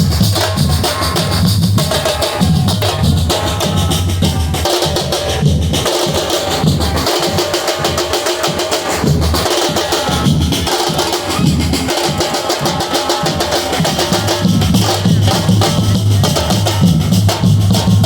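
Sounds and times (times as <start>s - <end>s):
drum ensemble playing: 0.0s - 18.0s.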